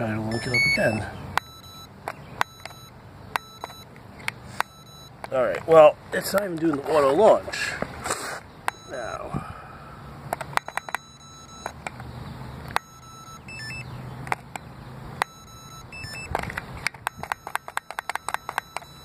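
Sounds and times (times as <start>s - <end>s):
electronic beeps: 0.2s - 3.9s, 4.6s - 5.2s, 8.7s - 9.2s, 10.6s - 11.8s, 12.7s - 13.9s, 15.2s - 16.4s, 17.0s - 19.0s
button clicks: 10.4s - 11.8s.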